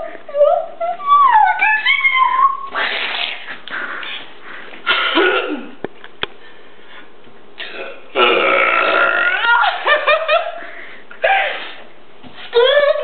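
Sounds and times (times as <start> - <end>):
high squeaky voice: 0.0 - 2.8, 12.5 - 13.0.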